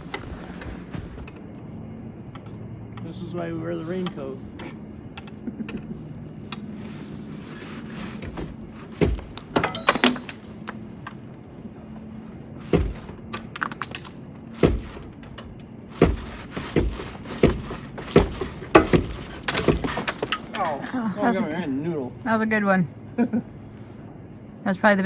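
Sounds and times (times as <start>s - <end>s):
chimney brush scraping flue pipe: 6.7s - 9.1s, 12.6s - 20.8s.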